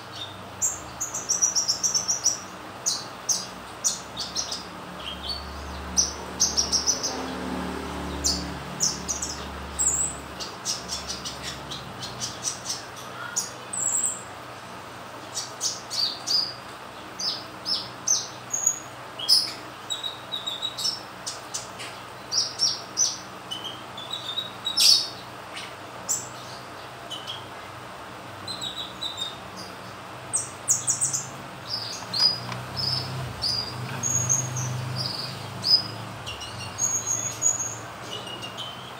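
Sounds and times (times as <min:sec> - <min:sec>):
bird chirping and trilling: 0:00.0 - 0:27.6, 0:28.3 - 0:38.9.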